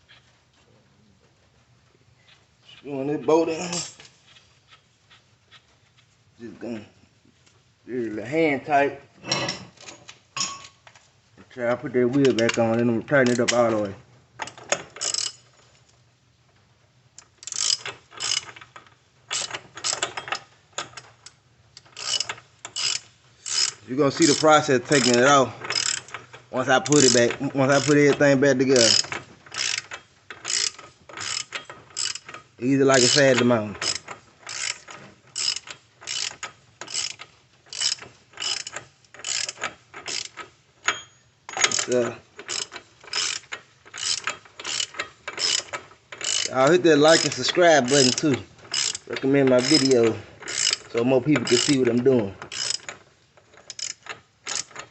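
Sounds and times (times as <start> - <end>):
socket ratchet clicking: 14.4 - 15.4, 17.2 - 54.9.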